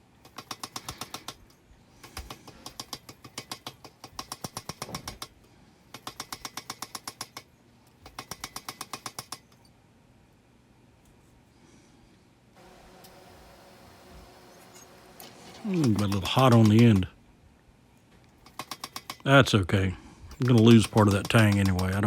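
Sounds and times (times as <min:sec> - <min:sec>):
power hammer striking hot steel: 0:20.4 - 0:22.0.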